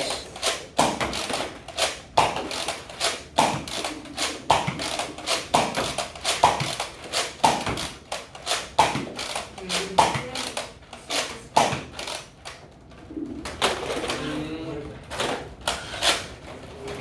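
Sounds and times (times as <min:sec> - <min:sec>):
toy blaster pumped and fired: 0:00.0 - 0:10.2
foam balls bouncing off surfaces: 0:00.8 - 0:02.7, 0:03.3 - 0:08.0, 0:08.7 - 0:10.4, 0:11.5 - 0:12.0.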